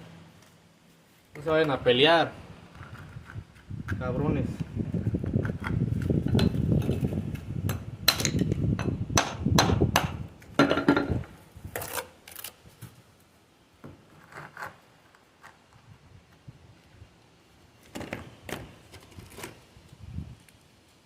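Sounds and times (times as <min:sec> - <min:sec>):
hammer striking stone: 0:07.7 - 0:11.2.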